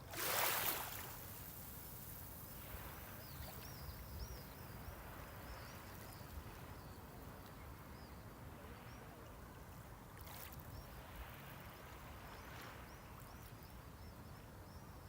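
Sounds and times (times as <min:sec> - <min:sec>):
sea waves at shoreline: 0:00.0 - 0:07.9.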